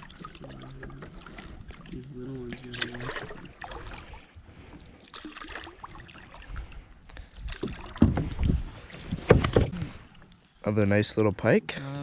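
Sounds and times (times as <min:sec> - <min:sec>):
water splashing: 0:00.0 - 0:10.3
kayak handling noise: 0:07.4 - 0:10.4.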